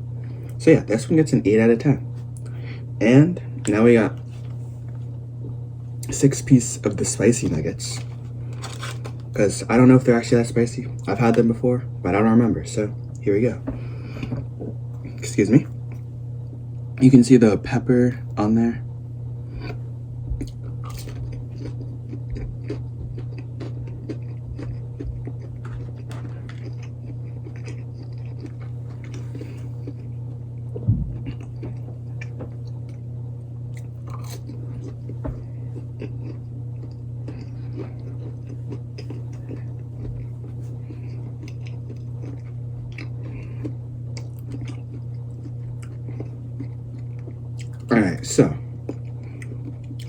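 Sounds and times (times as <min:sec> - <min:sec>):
low hum: 0:00.0 - 0:50.0
person chewing crunchy food: 0:03.6 - 0:09.9, 0:13.8 - 0:16.6, 0:19.5 - 0:50.0.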